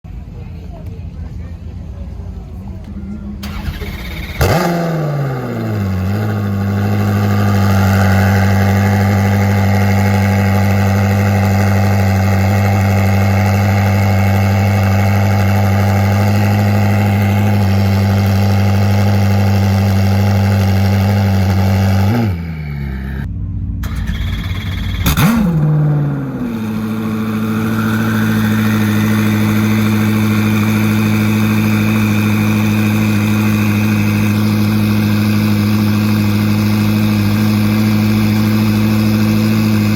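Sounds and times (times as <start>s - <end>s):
car engine starting and idling: 0.1s - 39.9s.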